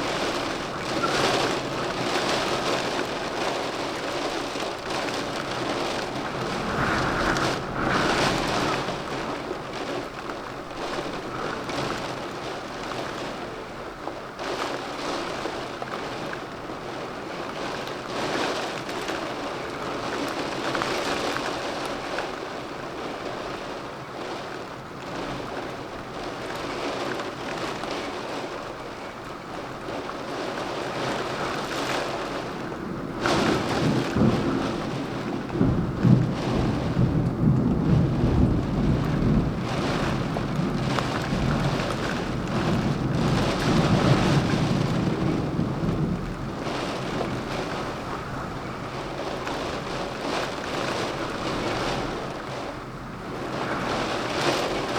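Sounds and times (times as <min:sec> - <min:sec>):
rolling thunder: 0:00.0 - 0:13.5, 0:30.6 - 0:54.9
steady rain: 0:00.0 - 0:54.9.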